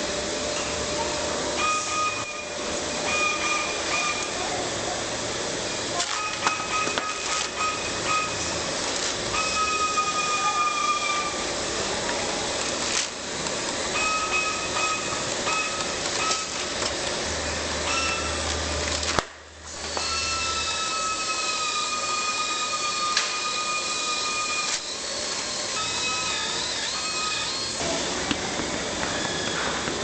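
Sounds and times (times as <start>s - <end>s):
machinery hissing: 0.0s - 19.0s
high machine whine: 0.0s - 30.0s.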